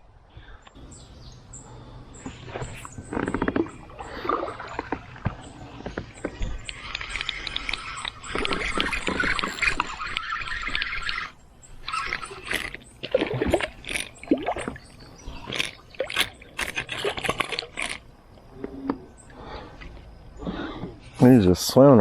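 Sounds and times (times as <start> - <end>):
water splashing around kayak: 2.3 - 18.0.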